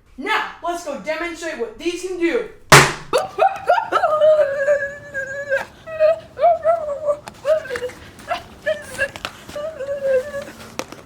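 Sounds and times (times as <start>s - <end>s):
high-pitched whining cries: 3.2s - 10.8s.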